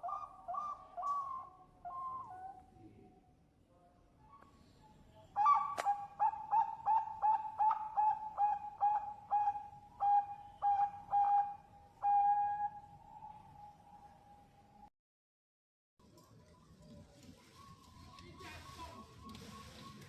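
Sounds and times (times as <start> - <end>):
dove cooing: 0.0 - 2.7, 5.4 - 13.7, 17.4 - 20.0.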